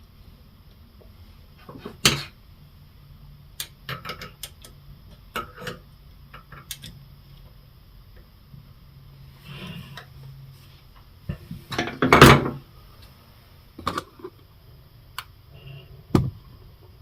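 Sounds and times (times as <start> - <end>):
screwdriver clicking on faucet parts: 6.4 - 7.0.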